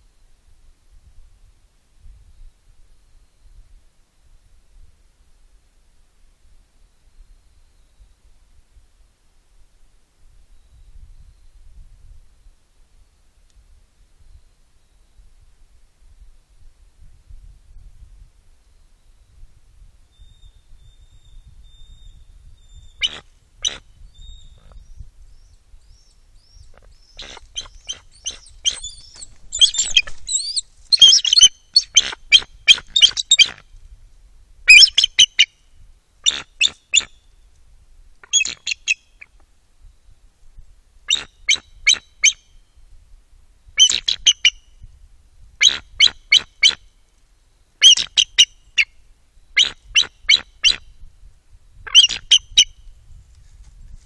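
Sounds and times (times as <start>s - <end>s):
eagles chattering calls: 26.8s - 33.6s.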